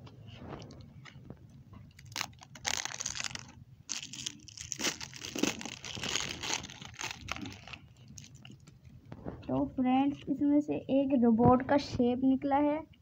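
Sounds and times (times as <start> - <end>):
plastic packaging crinkling and tearing: 1.9 - 8.8.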